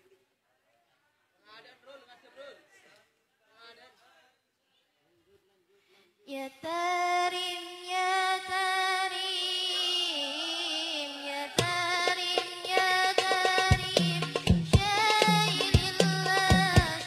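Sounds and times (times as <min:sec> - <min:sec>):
hand drums playing steady rhythm: 0:11.6 - 0:17.0
ornamented melody line: 0:13.9 - 0:17.0.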